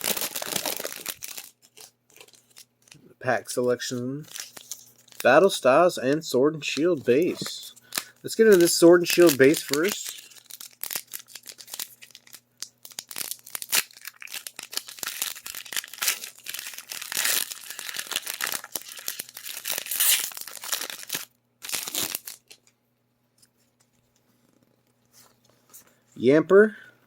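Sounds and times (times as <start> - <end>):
foil wrapper tearing and crinkling: 0.0 - 3.0, 4.3 - 5.4, 6.9 - 22.7.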